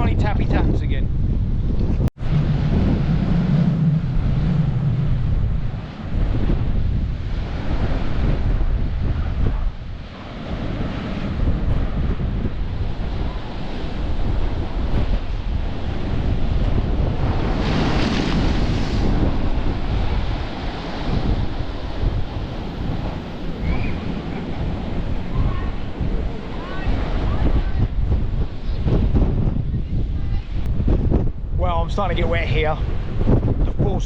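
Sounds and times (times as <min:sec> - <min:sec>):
wind buffeting microphone: 0:00.0 - 0:34.0
waves breaking: 0:02.2 - 0:33.8.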